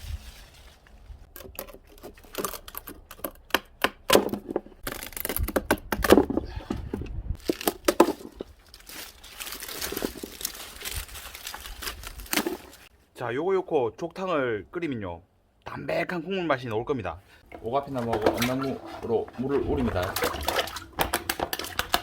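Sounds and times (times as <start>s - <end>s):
wood fire crackling and popping: 20.2s - 22.0s.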